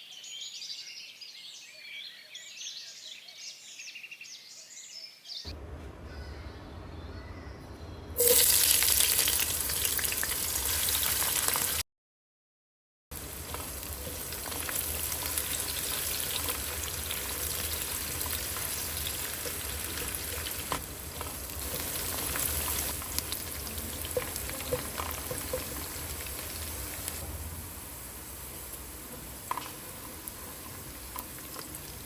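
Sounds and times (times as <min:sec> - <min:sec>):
food sizzling in oil: 0:08.2 - 0:11.8, 0:13.1 - 0:32.0.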